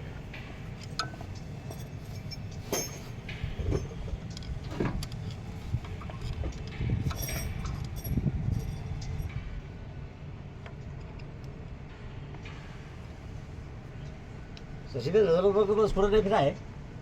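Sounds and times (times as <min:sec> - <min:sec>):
metal tools clinking: 0:00.8 - 0:05.4, 0:07.0 - 0:09.3.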